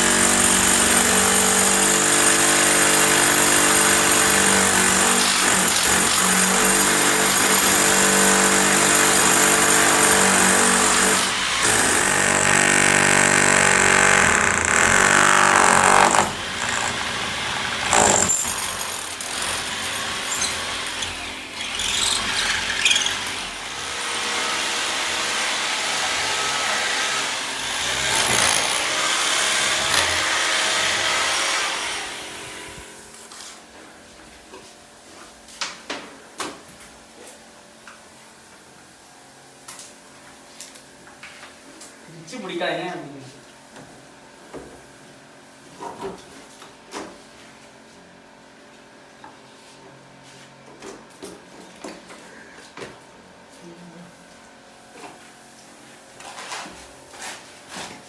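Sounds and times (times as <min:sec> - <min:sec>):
power drill whirring: 0:00.0 - 0:32.7.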